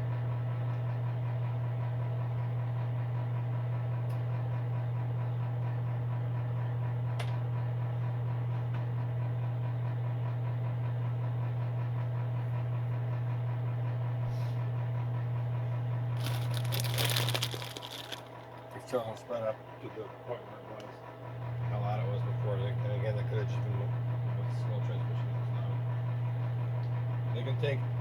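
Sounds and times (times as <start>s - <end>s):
heater fan humming: 15.9s - 19.3s
crackling: 16.2s - 18.4s.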